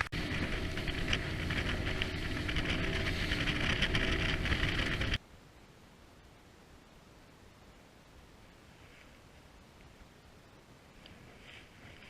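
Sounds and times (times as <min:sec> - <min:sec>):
boat motor running: 0:00.0 - 0:05.2
rushing wind: 0:00.0 - 0:05.2
water noise: 0:00.0 - 0:05.2.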